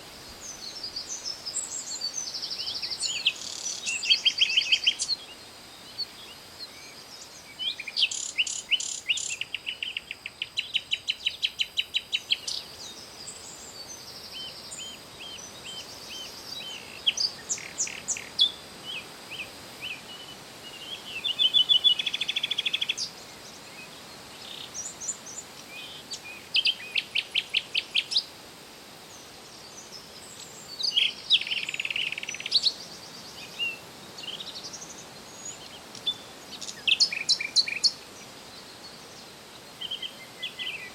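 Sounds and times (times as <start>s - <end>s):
songbirds chirping and trilling: 0.0s - 28.3s, 29.1s - 40.9s
faint steady hiss: 0.0s - 40.9s.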